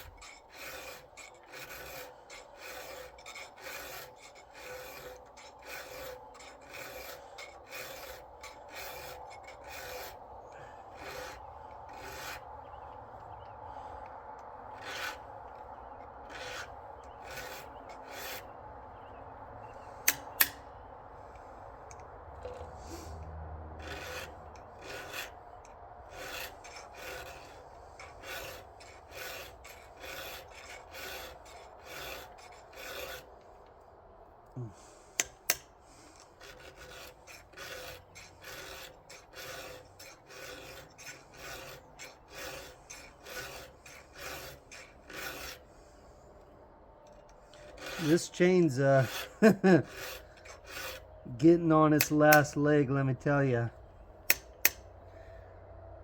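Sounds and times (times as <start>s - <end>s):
file rasping on chainsaw chain: 0.0s - 18.6s, 19.7s - 20.6s, 21.2s - 33.8s, 34.6s - 54.9s
sharp metal clicks: 20.0s - 20.7s, 35.2s - 42.7s, 54.2s - 54.9s.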